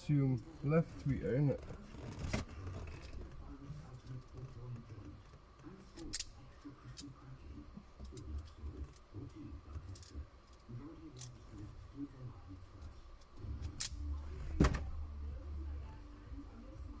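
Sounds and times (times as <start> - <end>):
faint handling noise: 0.3 - 15.0.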